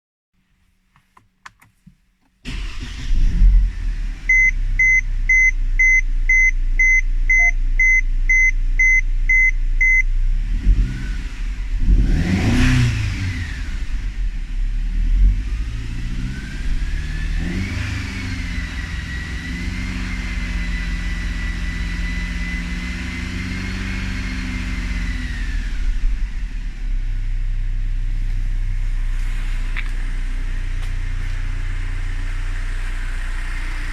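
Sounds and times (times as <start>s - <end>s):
car engine starting and idling: 0.5s - 33.9s
warning chime beeping: 4.3s - 10.0s.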